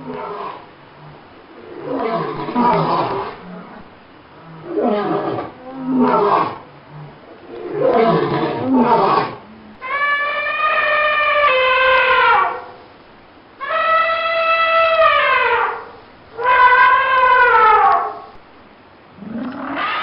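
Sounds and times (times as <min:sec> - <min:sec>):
large wild animal calling loudly: 0:04.5 - 0:12.8, 0:13.6 - 0:18.3, 0:19.2 - 0:20.0.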